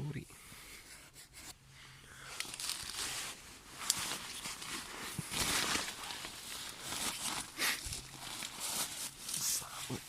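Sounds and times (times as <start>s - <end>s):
rustling and crunching: 2.3s - 10.0s.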